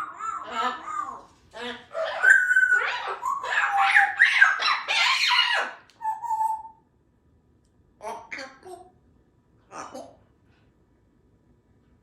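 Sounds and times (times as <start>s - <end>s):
parrot whistling and chattering: 1.8s - 6.8s.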